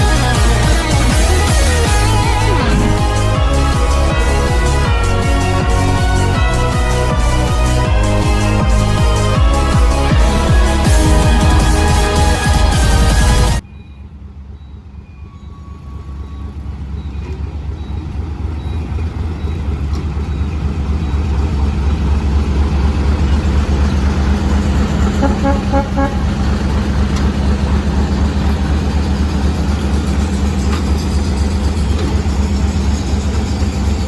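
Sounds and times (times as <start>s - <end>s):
locomotive horn toots: 0.0s - 13.6s, 24.6s - 28.7s
locomotive diesel engine humming: 0.0s - 34.0s.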